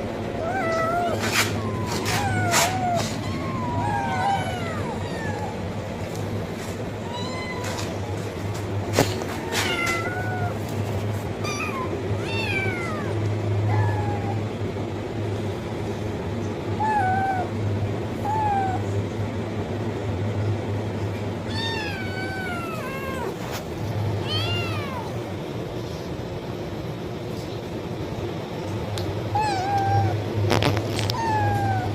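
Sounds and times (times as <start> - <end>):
steady low hum: 0.0 - 31.9
kitten meowing: 0.4 - 5.6, 7.0 - 8.2, 9.4 - 10.6, 11.4 - 14.4, 21.5 - 23.4, 24.2 - 25.2, 29.3 - 30.2, 31.0 - 31.9.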